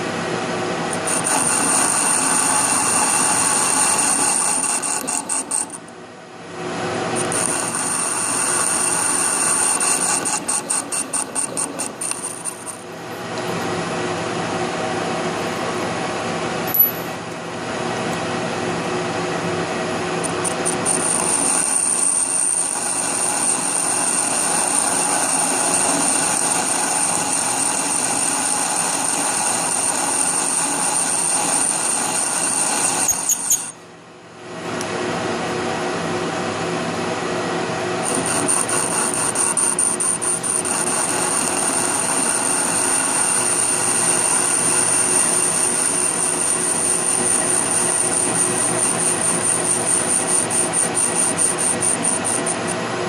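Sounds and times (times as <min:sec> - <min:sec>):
lathe whining: 0:00.8 - 0:05.9, 0:06.7 - 0:13.7, 0:20.2 - 0:33.8, 0:38.0 - 0:53.0
sharp click: 0:16.7 - 0:17.1.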